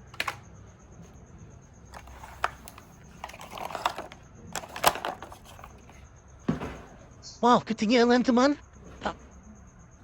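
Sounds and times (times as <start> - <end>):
plastic toys clicking: 0.0 - 0.4, 1.9 - 5.9
toys rattling: 1.9 - 6.0.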